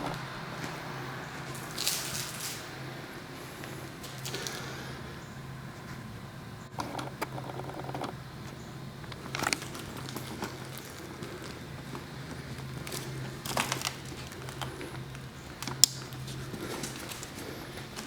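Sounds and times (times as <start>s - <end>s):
steady low hum: 0.0s - 18.0s
paper crinkling and crunching: 1.3s - 2.9s, 9.1s - 18.0s.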